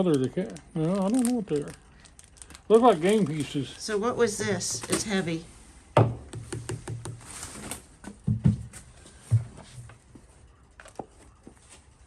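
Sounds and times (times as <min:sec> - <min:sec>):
dull thumps: 0:08.0 - 0:09.8.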